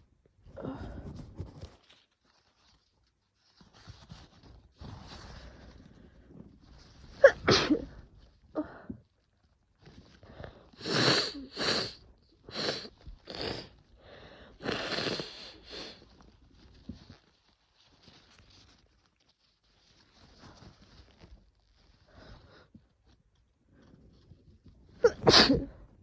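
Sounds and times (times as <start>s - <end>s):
woman sneezing: 7.2s - 7.9s, 25.0s - 25.7s.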